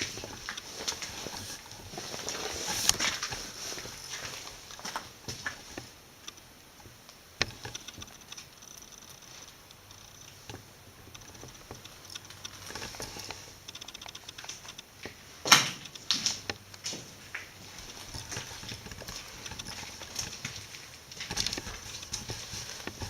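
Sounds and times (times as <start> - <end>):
quick ticks: 7.4 - 14.9.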